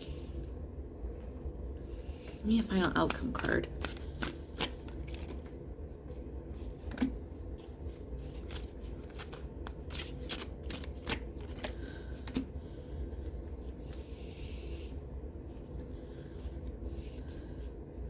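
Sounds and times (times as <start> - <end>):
cards flicking and tapping: 3.0 - 5.5, 8.3 - 12.5.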